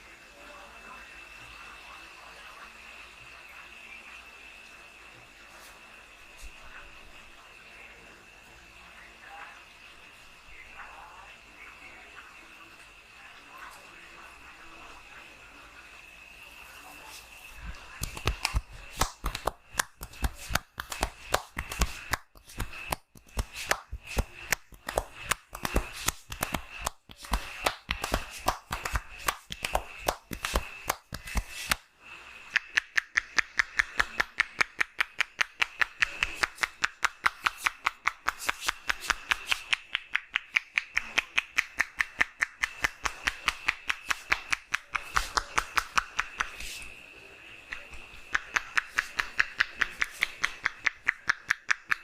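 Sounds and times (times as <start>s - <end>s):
hands slapping on skin: 17.7s - 31.8s, 32.5s - 46.9s, 47.7s - 52.0s.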